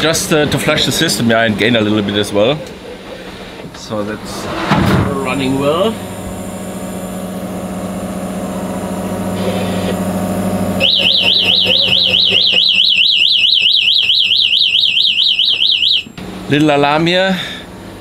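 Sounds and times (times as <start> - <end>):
water maker humming: 5.1 - 14.3
high warbling alarm tone: 10.7 - 16.2.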